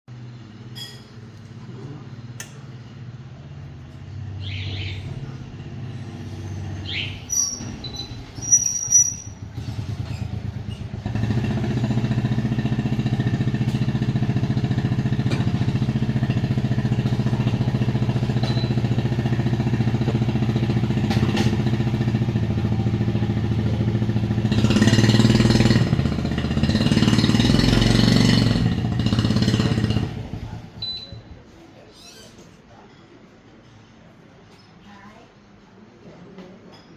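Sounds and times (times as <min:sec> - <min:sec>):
motorbike buzzing drone: 0:09.4 - 0:30.6.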